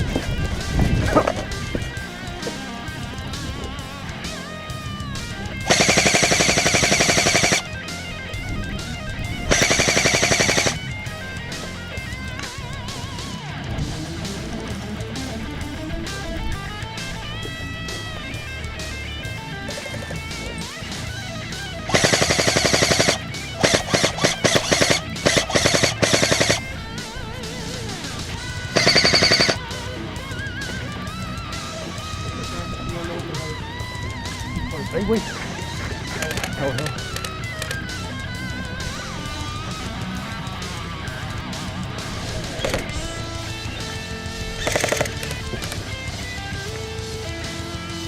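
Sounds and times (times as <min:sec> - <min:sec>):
motor whine: 0:00.0 - 0:14.4, 0:15.3 - 0:32.5
guitar music: 0:00.0 - 0:48.0
airsoft gun full-auto fire: 0:05.6 - 0:08.1, 0:09.5 - 0:11.2, 0:21.9 - 0:26.8, 0:28.7 - 0:29.8, 0:44.5 - 0:45.9.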